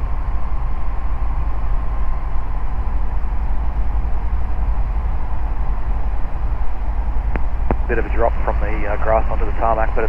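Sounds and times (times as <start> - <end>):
light aircraft engine rumble: 0.0 - 10.0.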